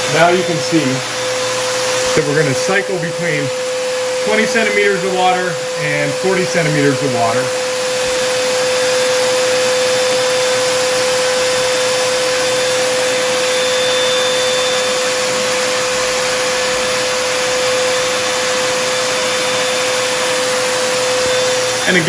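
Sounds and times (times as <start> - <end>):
paint sprayer hissing and whining: 0.0 - 22.0.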